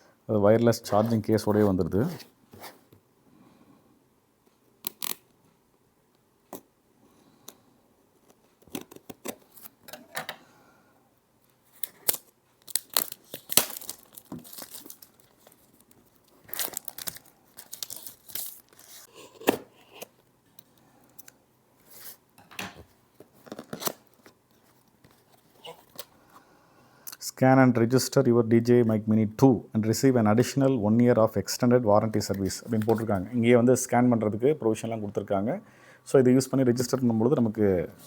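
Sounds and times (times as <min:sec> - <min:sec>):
paper and plastic crinkling: 0:11.7 - 0:19.1.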